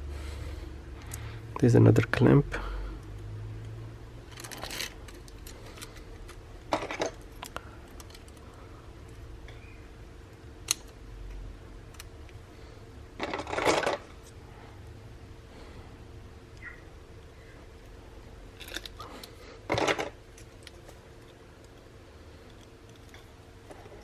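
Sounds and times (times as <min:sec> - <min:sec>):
faint steady hum: 0:00.0 - 0:24.0
plastic clamps rattling: 0:13.2 - 0:14.1.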